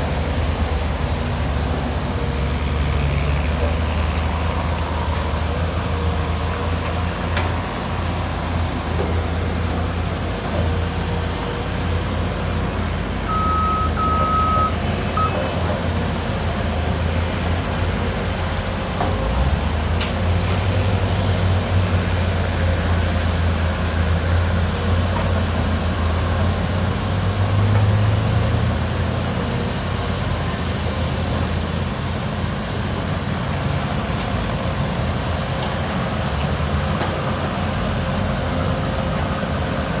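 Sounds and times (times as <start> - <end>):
heavy diesel engines running: 0.0 - 40.0
short high beeps: 13.3 - 15.5.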